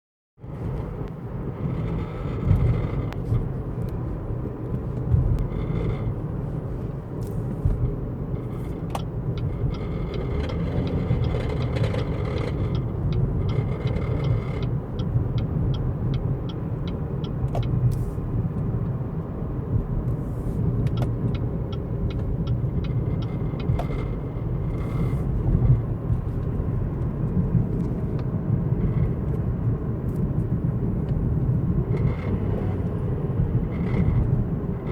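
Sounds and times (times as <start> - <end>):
car engine rumbling: 0.4 - 34.9
regular ticks: 7.2 - 18.8, 20.0 - 29.5.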